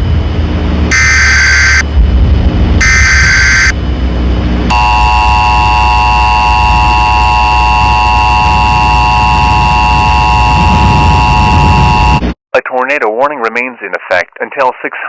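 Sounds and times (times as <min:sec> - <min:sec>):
low hum: 0:00.0 - 0:12.4
two-tone alert signal: 0:00.9 - 0:01.8, 0:02.8 - 0:03.8, 0:04.7 - 0:12.2
harsh data screech: 0:00.9 - 0:01.9, 0:02.8 - 0:03.8, 0:04.7 - 0:12.2.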